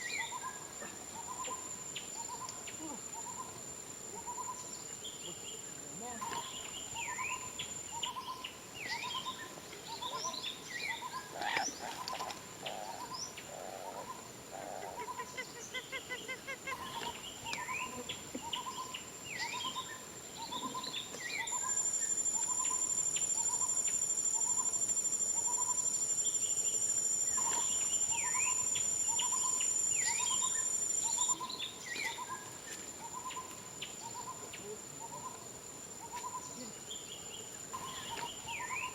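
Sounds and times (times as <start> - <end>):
high-pitched insect whine: 0.0 - 38.9
hooting bird call: 6.2 - 26.4, 27.2 - 32.4.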